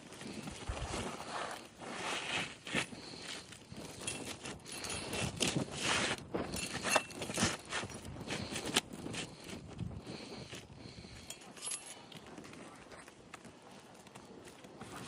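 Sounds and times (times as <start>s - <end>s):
roof shingle scraping and rustling: 0.8s - 10.3s.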